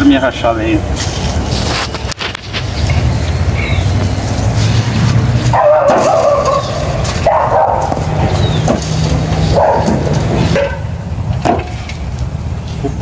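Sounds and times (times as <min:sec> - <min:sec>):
dog barking: 0:05.5 - 0:08.2, 0:09.5 - 0:10.9.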